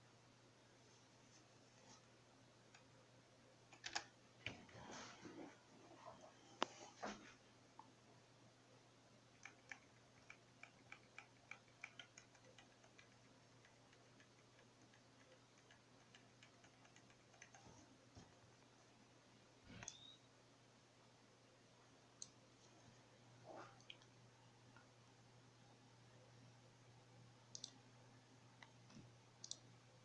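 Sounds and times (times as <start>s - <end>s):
low steady hum: 0.0s - 30.0s
faint clicks and crackles: 9.3s - 18.8s.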